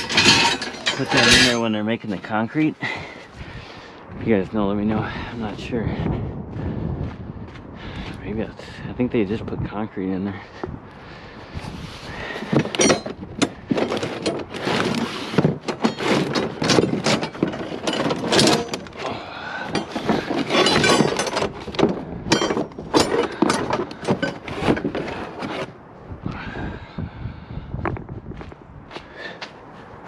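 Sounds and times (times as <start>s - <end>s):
scrap metal clanking in a dumpster: 0.0s - 3.1s, 12.2s - 25.7s.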